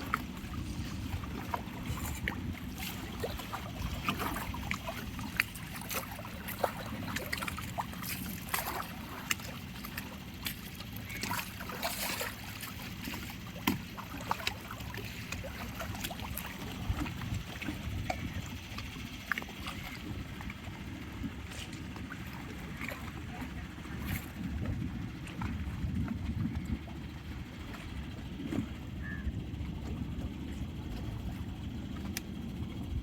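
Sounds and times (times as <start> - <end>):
small water splashes: 0.0 - 32.5
boat engine rumble: 0.0 - 33.0.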